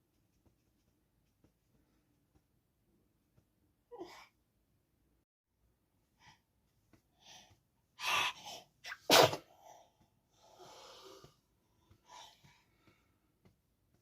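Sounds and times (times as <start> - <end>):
soft breathy sounds: 1.4 - 4.6, 5.9 - 14.0
baby sneezing: 8.8 - 9.5.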